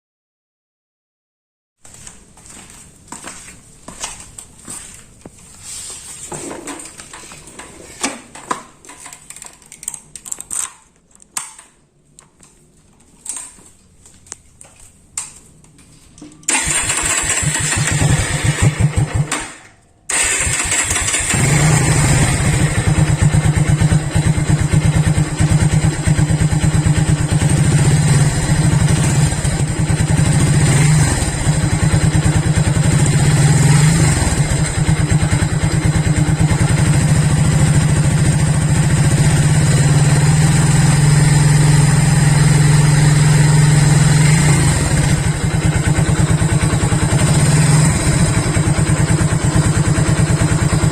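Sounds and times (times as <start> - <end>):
electric starter motor cranking: 16.5 - 22.9
motorcycle engine idling: 20.7 - 50.9.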